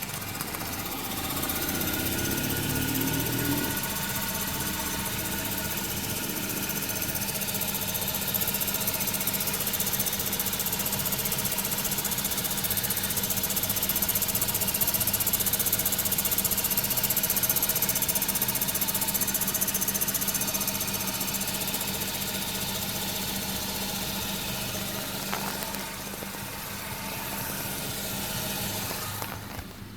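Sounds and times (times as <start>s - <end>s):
car engine running: 0.0s - 29.9s.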